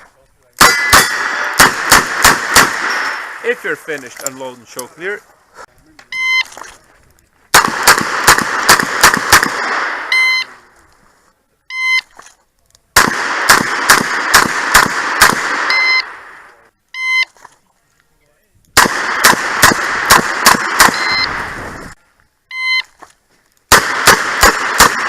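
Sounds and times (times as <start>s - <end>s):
rapid revolver fire: 0.6s - 3.4s, 7.5s - 10.1s, 13.0s - 16.4s, 18.8s - 21.6s, 23.7s - 25.0s
shot timer beeps: 6.1s - 6.5s, 10.0s - 10.6s, 11.7s - 12.1s, 15.7s - 16.2s, 16.9s - 17.3s, 20.8s - 21.4s, 22.5s - 22.9s.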